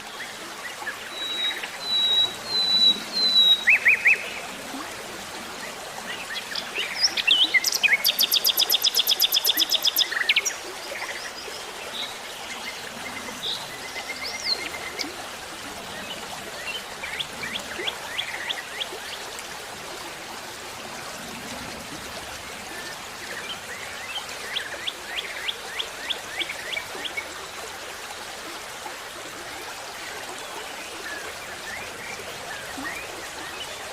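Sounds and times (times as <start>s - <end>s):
birds singing: 0.2s - 4.5s, 6.1s - 15.1s.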